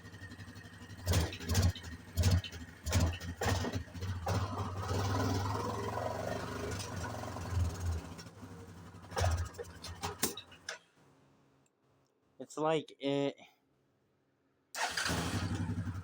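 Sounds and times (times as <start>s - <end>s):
engine revving and popping: 0.0s - 10.7s, 14.8s - 16.0s.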